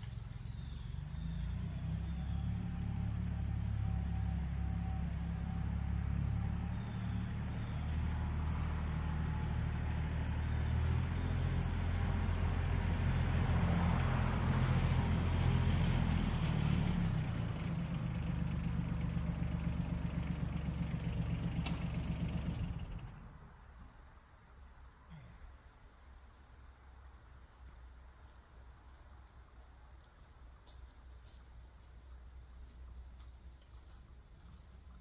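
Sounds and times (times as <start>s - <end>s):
tractor engine running: 0.0s - 24.8s.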